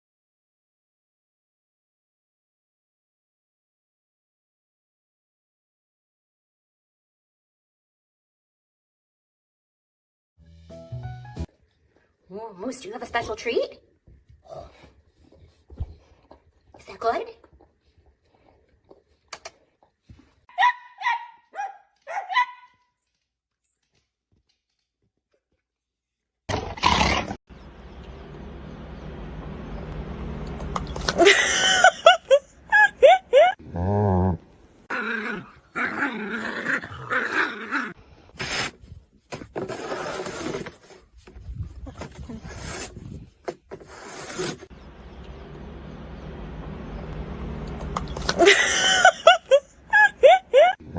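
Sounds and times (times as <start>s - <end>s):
dog barking high-pitched: 20.5s - 22.8s.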